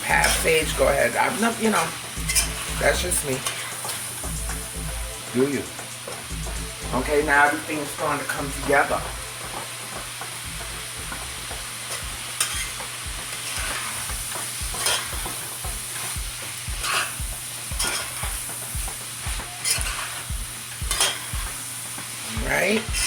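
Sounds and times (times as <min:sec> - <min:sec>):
spoon stirring and scraping a pan: 0:00.0 - 0:04.2, 0:11.7 - 0:23.0
food frying hiss: 0:00.0 - 0:23.0
spoon knocking against pan: 0:09.4 - 0:21.6.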